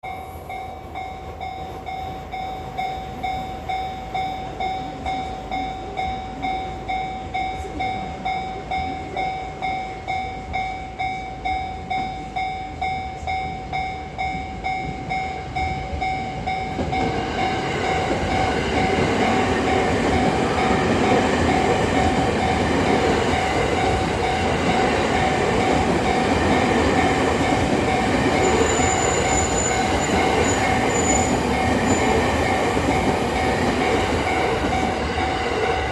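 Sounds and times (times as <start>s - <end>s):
level-crossing bell ringing: 0.0s - 35.9s
train running over crossing: 0.0s - 35.9s.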